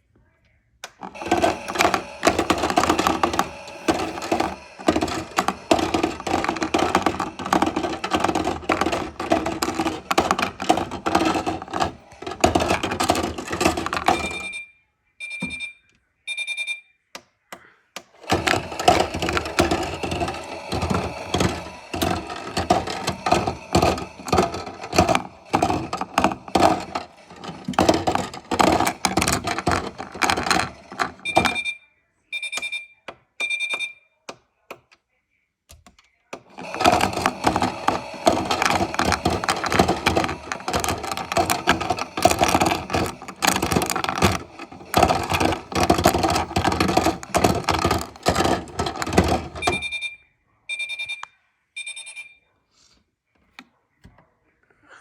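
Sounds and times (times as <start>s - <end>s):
washing machine beeps: 13.8s - 17.0s, 31.2s - 34.1s, 49.4s - 52.5s
rapid rattling clatter: 36.5s - 49.7s.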